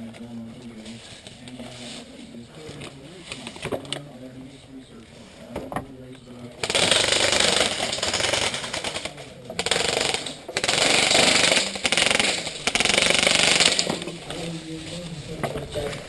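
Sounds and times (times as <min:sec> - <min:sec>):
airsoft rifle firing full-auto: 0:06.6 - 0:14.0.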